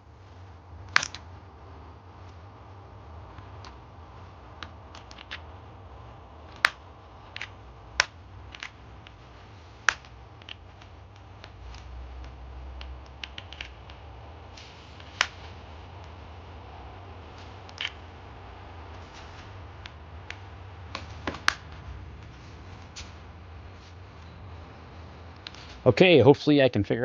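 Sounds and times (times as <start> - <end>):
low steady hum: 0.0 - 27.0
loud snaps: 0.9 - 1.3, 3.3 - 25.9
small parts clicking and tapping: 4.6 - 5.6, 6.4 - 16.2.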